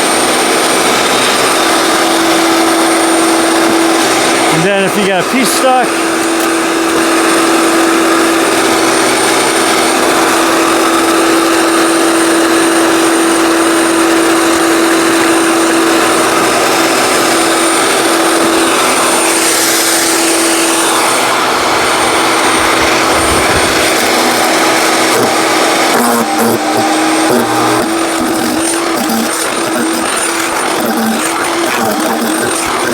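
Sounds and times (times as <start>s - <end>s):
wood chipper motor whine: 0.0s - 32.9s
branches being chipped: 5.4s - 7.5s, 23.3s - 32.9s.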